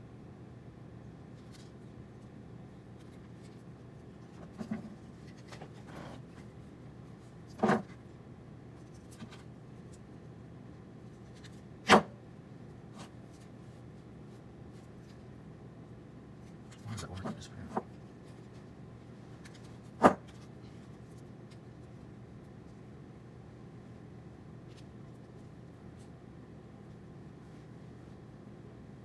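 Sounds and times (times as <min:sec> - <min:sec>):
steady low hum: 0:12.3 - 0:19.9.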